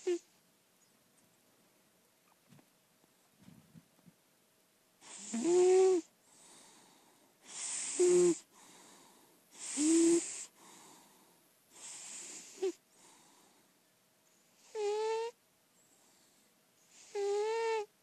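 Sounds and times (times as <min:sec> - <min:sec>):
cat snoring with whistle: 0:05.0 - 0:06.1, 0:07.5 - 0:08.4, 0:09.6 - 0:10.5, 0:11.8 - 0:12.8, 0:14.6 - 0:15.4, 0:16.9 - 0:17.9
soft breath: 0:06.2 - 0:13.8, 0:15.8 - 0:17.2.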